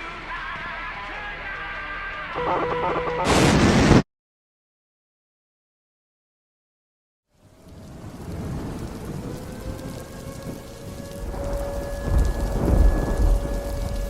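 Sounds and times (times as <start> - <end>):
rain hissing: 3.3 - 4.0, 7.3 - 14.0
deep rumble: 7.6 - 14.0.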